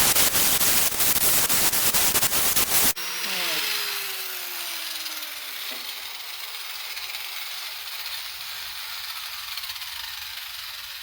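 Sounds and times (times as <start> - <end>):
steady hiss: 0.0 - 3.6
angle grinder spinning down: 0.8 - 11.0.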